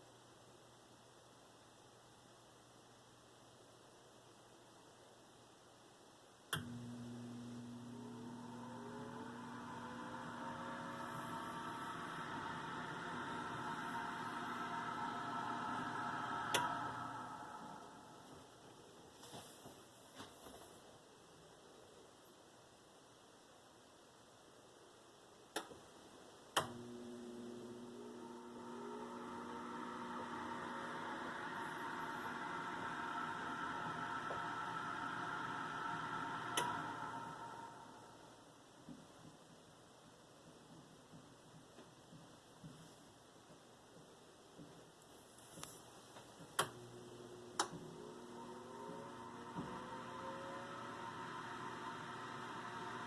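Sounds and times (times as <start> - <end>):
oven fan humming: 6.6 - 18.8, 26.6 - 38.5, 45.4 - 53.0
relay clicks: 33.8 - 37.8.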